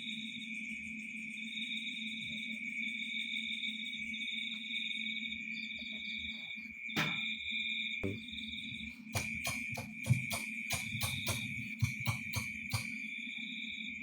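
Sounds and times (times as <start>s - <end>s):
crickets trilling: 0.0s - 14.0s
rapid sharp clicks: 9.2s - 13.0s.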